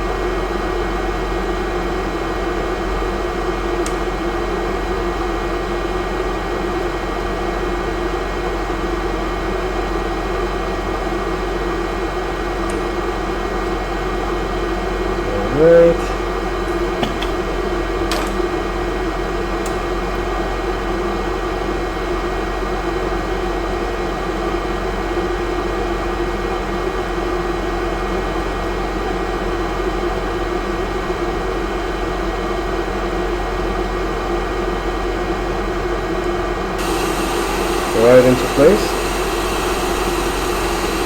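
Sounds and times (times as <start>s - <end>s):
hot air station blowing: 14.9s - 17.8s, 36.8s - 41.0s.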